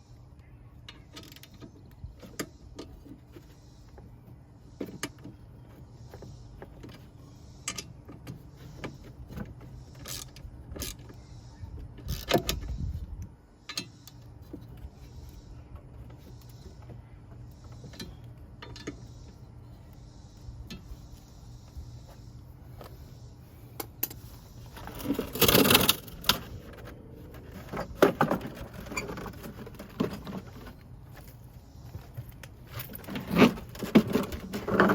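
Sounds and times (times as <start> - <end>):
steady low hum: 0.0 - 34.9
tools clicking and knocking: 17.7 - 19.1
tool rattle: 24.1 - 30.8.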